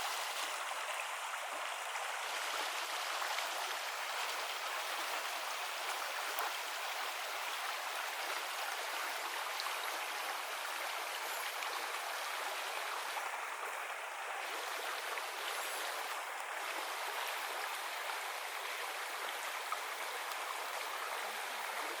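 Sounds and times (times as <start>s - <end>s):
river flowing over stones: 0.0s - 22.0s.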